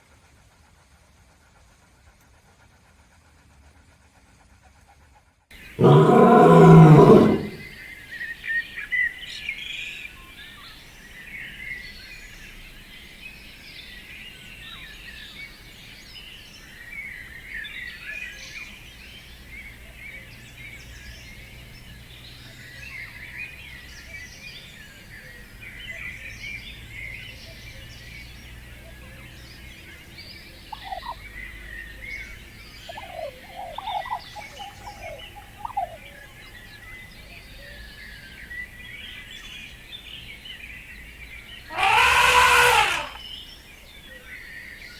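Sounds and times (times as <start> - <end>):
larger bird's low calls: 5.6 - 7.7, 30.7 - 31.2, 32.3 - 36.1, 41.7 - 43.2
birds chirping in chorus: 5.6 - 24.8, 25.7 - 44.9.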